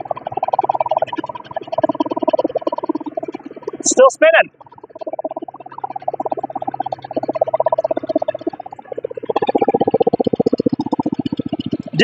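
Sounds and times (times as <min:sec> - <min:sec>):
small gasoline engine running: 0:00.0 - 0:12.0
wood chipper spinning: 0:00.0 - 0:12.0.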